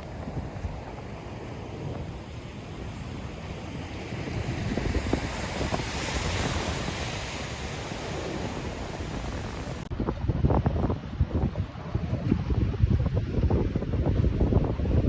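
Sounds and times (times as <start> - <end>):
wind buffeting microphone: 0.0 - 15.0
surf breaking: 3.5 - 9.9.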